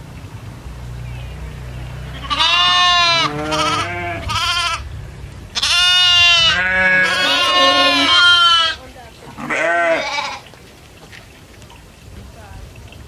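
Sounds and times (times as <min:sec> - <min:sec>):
low steady rumble: 0:00.0 - 0:13.0
goats bleating: 0:02.1 - 0:04.9, 0:05.5 - 0:10.5.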